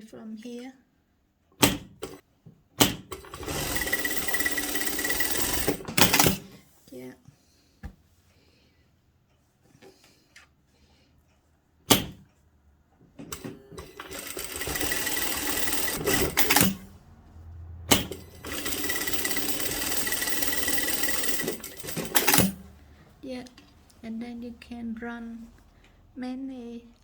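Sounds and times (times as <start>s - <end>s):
sewing machine stitching: 2.8s - 6.6s, 13.2s - 17.0s, 17.9s - 22.7s.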